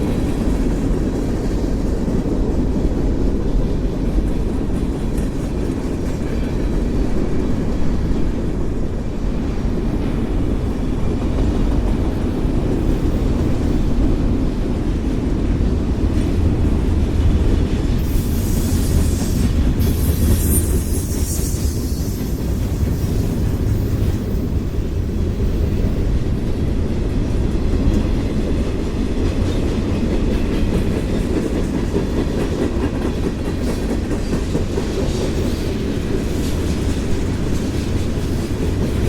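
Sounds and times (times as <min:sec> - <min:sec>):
train wheels rumbling on rail: 0:00.0 - 0:39.0
high-pitched wheel squeal: 0:18.4 - 0:22.4.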